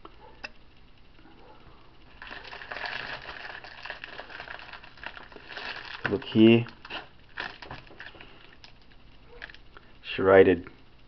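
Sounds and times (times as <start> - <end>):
packaging crinkling: 2.1 - 9.7.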